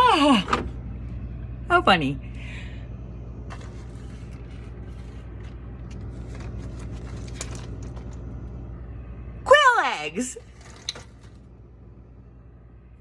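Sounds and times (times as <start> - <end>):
items clicking and scraping in fridge: 0.0 - 1.2, 3.4 - 8.7, 10.2 - 11.7
refrigerator hum: 0.0 - 13.0.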